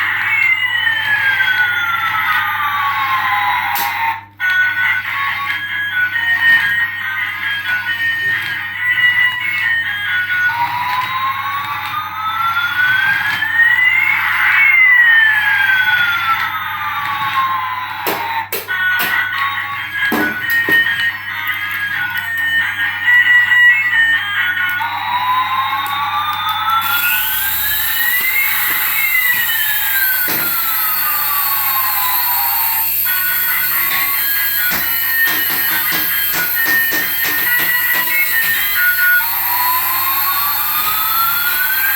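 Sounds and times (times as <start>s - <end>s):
siren-like gliding tone: 26.6s - 41.9s.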